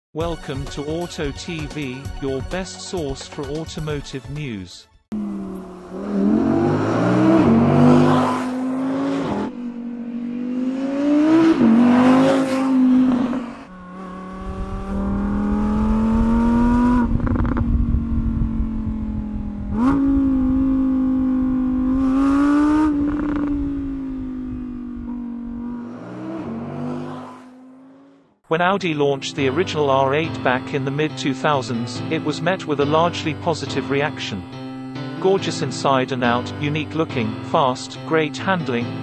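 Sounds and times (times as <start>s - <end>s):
car engine revving: 5.1s - 28.3s
deep rumble: 12.7s - 26.0s.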